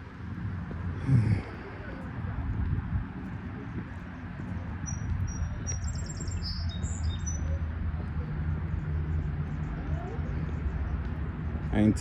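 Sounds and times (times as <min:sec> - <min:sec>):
small birds chirping: 0:04.0 - 0:12.0.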